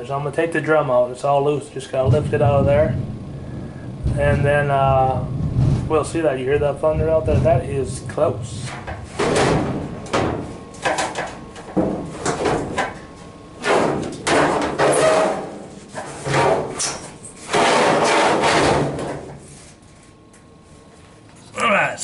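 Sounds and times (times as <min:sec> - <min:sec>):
metal drum clunking and scraping: 0:02.0 - 0:19.4.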